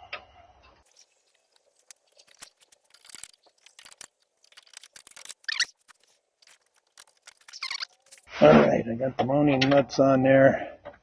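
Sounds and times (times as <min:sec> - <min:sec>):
clicks and scrapes of fitting plastic: 0:00.9 - 0:08.3
short squeak: 0:07.4 - 0:08.1.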